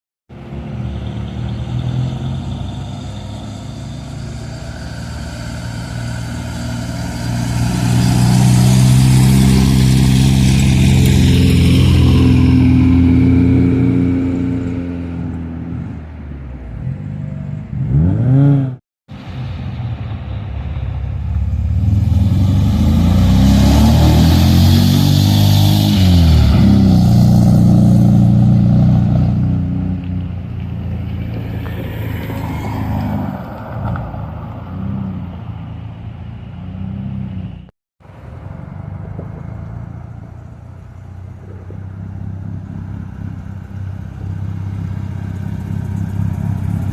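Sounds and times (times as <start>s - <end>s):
car engine revving: 0.7s - 15.9s, 16.8s - 18.8s, 20.8s - 30.4s
second car engine revving: 16.7s - 18.8s, 21.4s - 30.4s.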